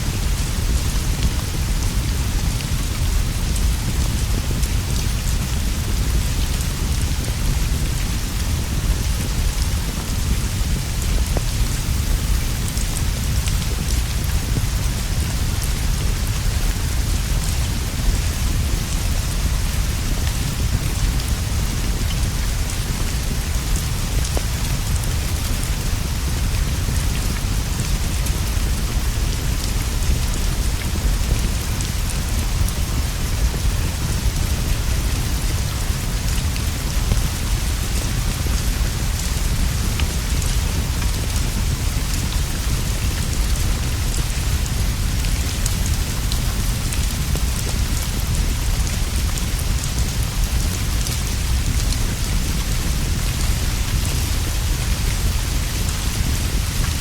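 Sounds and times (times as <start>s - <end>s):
rain on leaves and straw roof: 0.0s - 57.0s.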